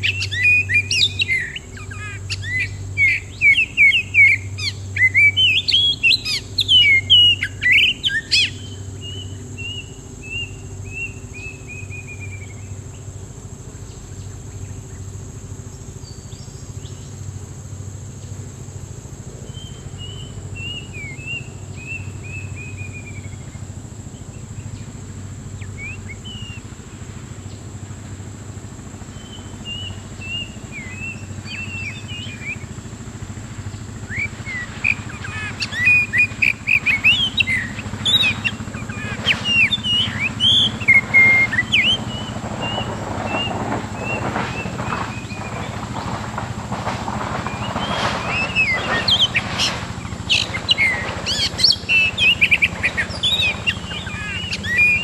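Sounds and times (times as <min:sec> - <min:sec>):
bird singing whistled song: 0:00.0 - 0:12.8, 0:19.5 - 0:23.6, 0:25.6 - 0:26.7, 0:29.1 - 0:32.7, 0:34.1 - 0:45.7, 0:47.5 - 0:55.0.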